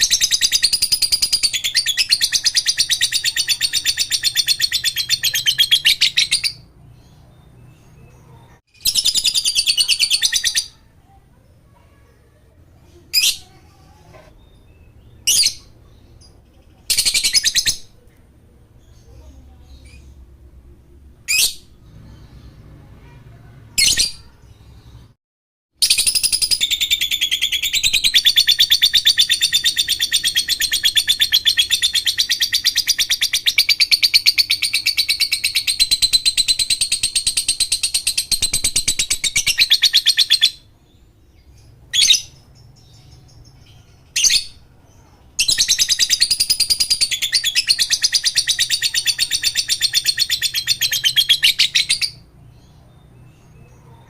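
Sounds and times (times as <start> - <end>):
lovebird chattering trill: 0.0 - 6.7, 25.8 - 40.7, 45.4 - 52.3
bird chirps: 0.0 - 20.4, 21.2 - 25.2, 25.8 - 54.0.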